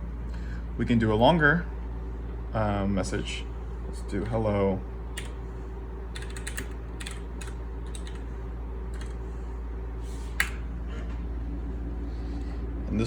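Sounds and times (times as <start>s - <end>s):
steady low hum: 0.0s - 13.0s
computer keyboard typing: 5.2s - 5.4s, 6.1s - 8.2s, 8.9s - 9.2s.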